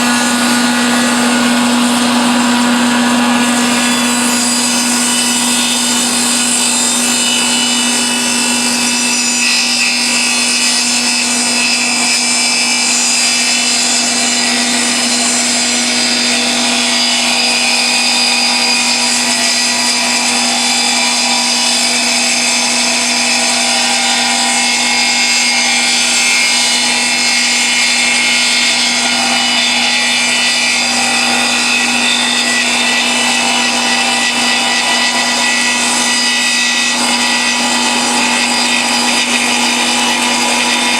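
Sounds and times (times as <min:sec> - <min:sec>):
saw cutting a log: 0:00.0 - 0:40.9.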